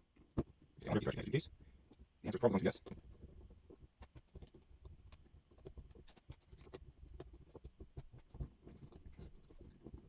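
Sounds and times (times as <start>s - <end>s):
small plastic clicks and scratches: 1.9s - 10.0s.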